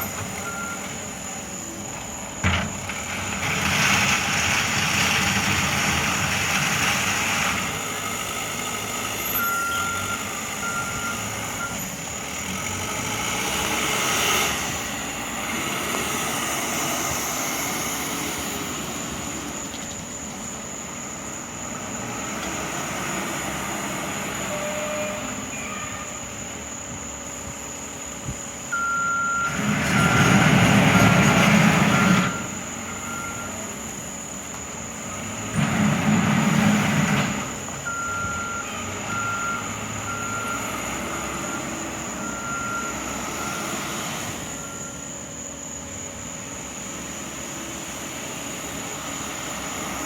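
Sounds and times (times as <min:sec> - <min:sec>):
reversing alarm beeping: 0:00.0 - 0:01.0, 0:09.2 - 0:12.0, 0:28.7 - 0:33.8, 0:37.8 - 0:43.8, 0:44.4 - 0:45.1
heavy truck engine running: 0:00.0 - 0:50.0.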